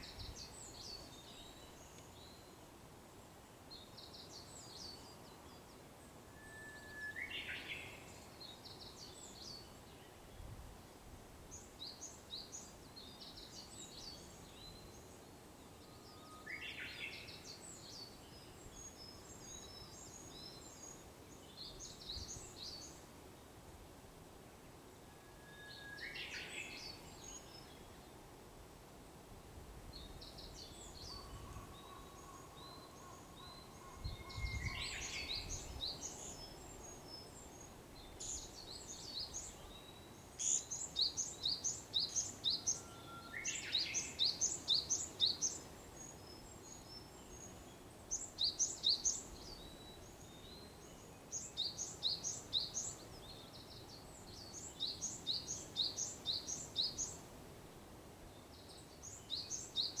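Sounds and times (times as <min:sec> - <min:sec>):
bush warbler whistling song: 0:25.4 - 0:27.9, 0:30.0 - 0:57.2, 0:58.4 - 1:00.0.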